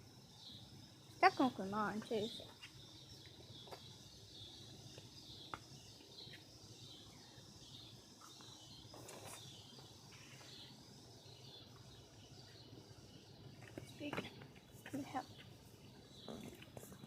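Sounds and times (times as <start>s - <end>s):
small bird chirps: 0.3s - 17.0s.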